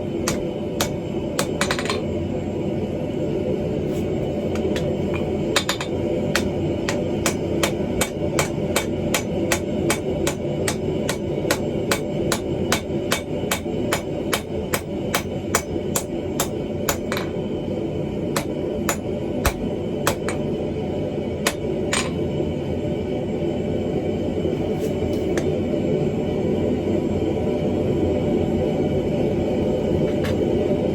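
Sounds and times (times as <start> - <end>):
hammer blows on hot steel: 4.6 - 17.2.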